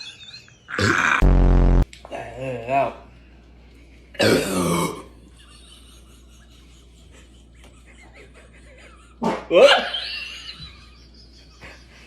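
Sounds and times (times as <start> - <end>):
person passing gas: 0.7 - 1.8.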